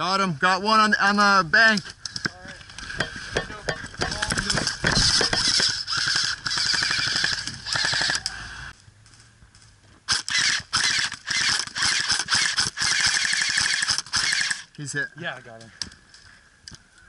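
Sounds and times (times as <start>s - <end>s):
airsoft gun firing full-auto bursts: 5.0s - 8.3s, 10.1s - 14.7s.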